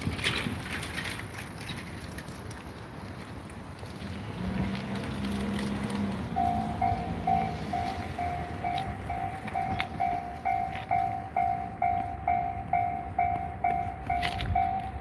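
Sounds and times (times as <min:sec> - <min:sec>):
level crossing bell ringing: 0:06.4 - 0:15.0.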